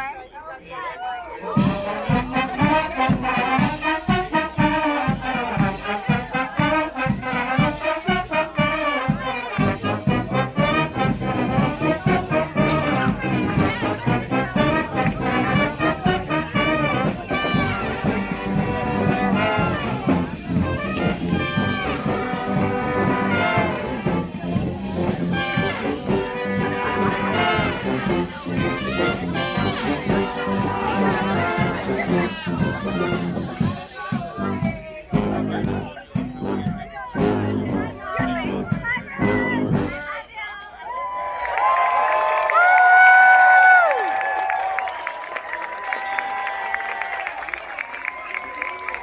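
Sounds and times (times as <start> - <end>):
brass band playing: 1.4 - 40.5.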